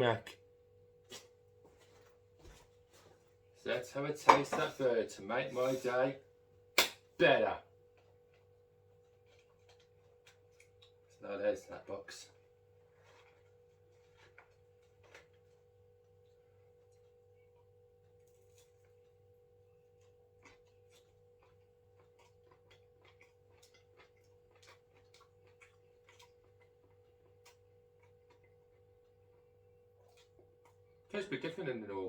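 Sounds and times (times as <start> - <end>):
faint electrical hum: 0.0 - 32.0
person eating clicks and smacks: 7.9 - 11.1, 19.9 - 30.9.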